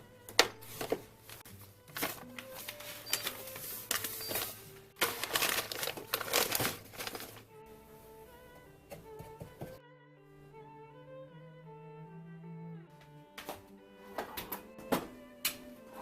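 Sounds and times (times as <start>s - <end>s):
soft background music: 0.0s - 16.0s
plastic packaging crinkling: 1.9s - 7.4s.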